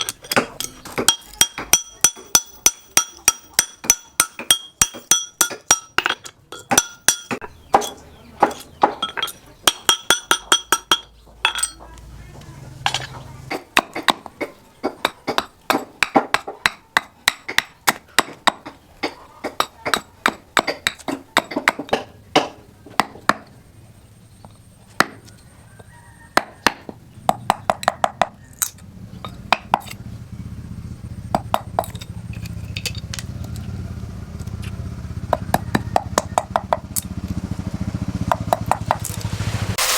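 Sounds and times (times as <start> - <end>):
hammer striking steel: 0.0 - 11.8.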